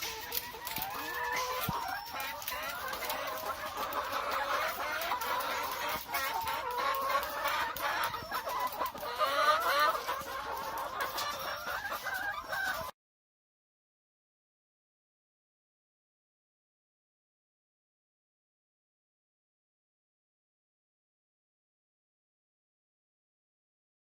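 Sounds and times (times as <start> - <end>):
hens clucking: 0.0 - 12.9.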